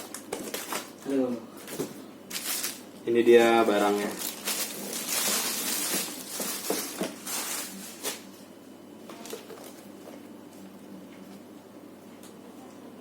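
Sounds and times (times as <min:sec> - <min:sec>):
packaging rustling: 0:00.0 - 0:02.8, 0:03.8 - 0:08.2.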